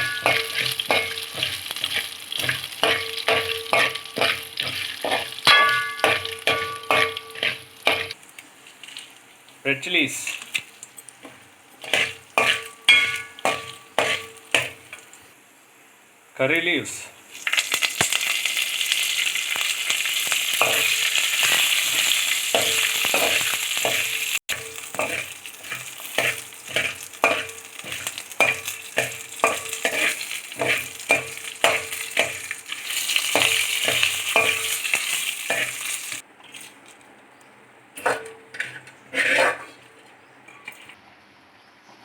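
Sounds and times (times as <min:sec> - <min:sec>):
spoon scraping and knocking pan: 0:00.0 - 0:08.2, 0:10.3 - 0:15.1, 0:20.6 - 0:36.7, 0:38.0 - 0:41.0
spices sizzling in hot oil: 0:00.0 - 0:36.8.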